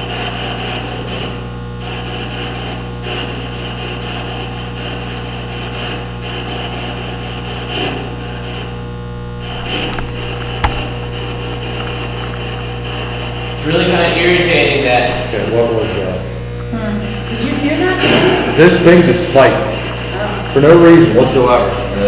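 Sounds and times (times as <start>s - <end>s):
low electrical hum: 0.0s - 22.0s
static hiss: 0.1s - 21.9s
sharp click: 9.6s - 11.0s.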